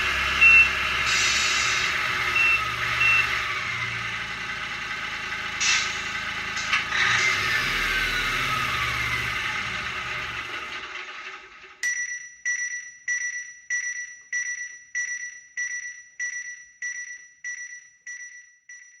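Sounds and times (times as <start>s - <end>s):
high chime-like ding: 11.8s - 13.4s.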